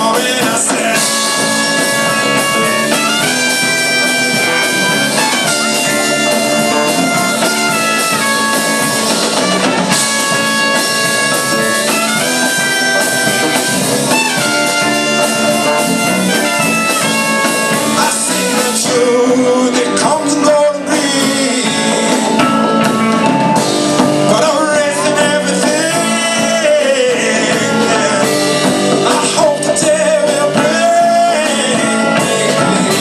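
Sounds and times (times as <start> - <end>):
band playing instrumental: 0.0 - 33.0
brass horns melody: 0.8 - 19.7.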